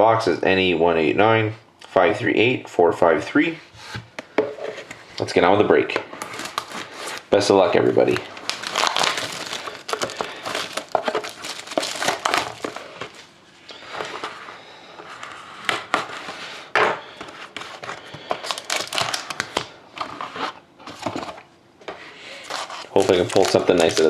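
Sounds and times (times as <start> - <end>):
plastic wrapping crinkling: 6.2 - 14.4, 17.8 - 19.7, 22.4 - 24.0.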